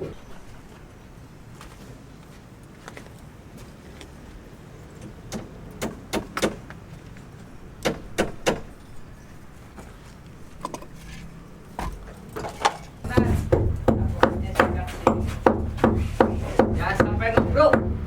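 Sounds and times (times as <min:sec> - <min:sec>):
sharp knocks and clanks: 0:05.3 - 0:06.8, 0:07.8 - 0:08.9, 0:10.6 - 0:18.0.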